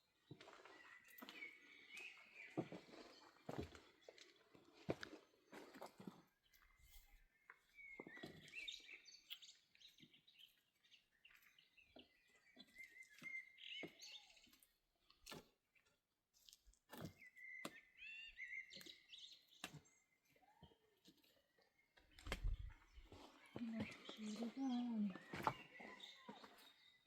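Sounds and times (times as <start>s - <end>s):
faint bird chirps: 17.2s - 27.0s.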